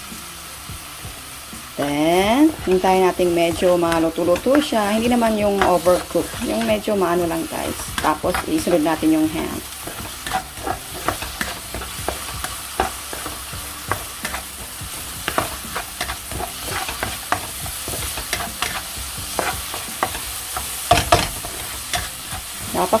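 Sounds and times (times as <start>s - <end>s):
garlic and onion sizzling in oil: 0.0s - 23.0s
utensil scraping and tapping pan: 3.5s - 6.9s, 9.8s - 22.4s.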